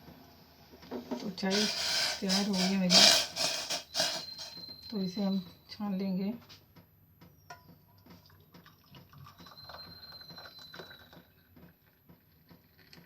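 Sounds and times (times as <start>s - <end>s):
pan and strainer clinking: 1.5s - 4.6s
liquid trickling into cup: 8.2s - 11.4s.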